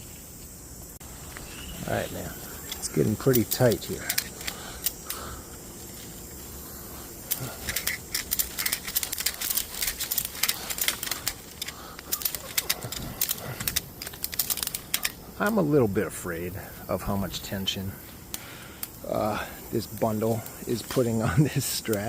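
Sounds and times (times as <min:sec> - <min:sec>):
ratchet strap clicking: 0:02.6 - 0:06.1, 0:07.2 - 0:15.6.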